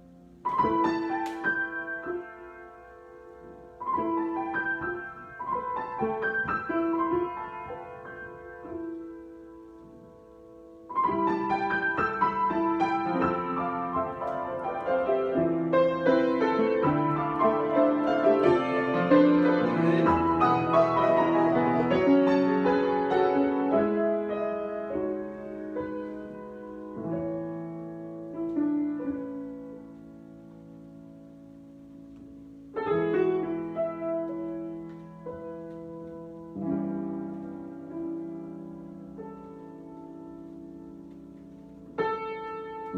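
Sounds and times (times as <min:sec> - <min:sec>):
solo piano improvisation: 0:00.0 - 0:42.9.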